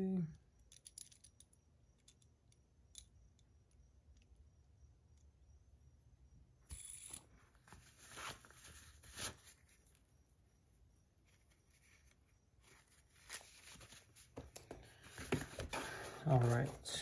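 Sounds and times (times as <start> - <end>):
small parts scraping and rustling: 0.6 - 4.3, 6.7 - 10.0, 11.2 - 17.0.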